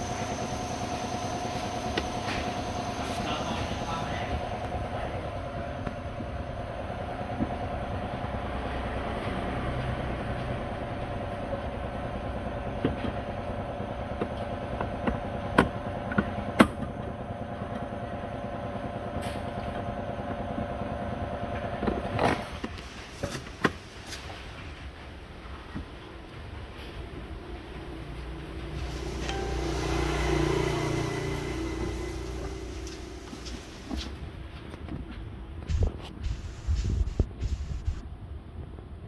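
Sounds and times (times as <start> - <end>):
machine humming: 0.0 - 4.8, 28.2 - 34.2.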